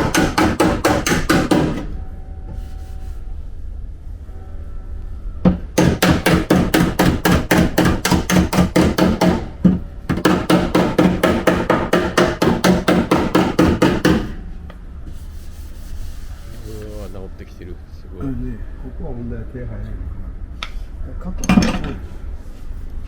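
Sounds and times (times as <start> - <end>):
hammer striking steel panel: 0.0 - 1.9, 5.5 - 14.4.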